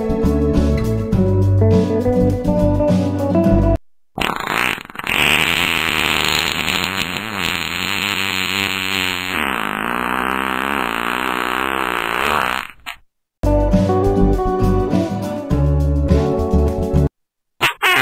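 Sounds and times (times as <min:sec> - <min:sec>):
fart sound effect: 0:04.2 - 0:13.0, 0:17.6 - 0:18.0.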